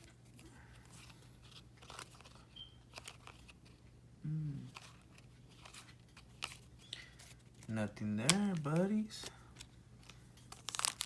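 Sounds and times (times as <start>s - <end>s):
cards being handled: 0.0s - 3.9s, 4.7s - 11.0s
person's voice: 7.7s - 9.4s
wrappers crinkling: 10.0s - 11.0s.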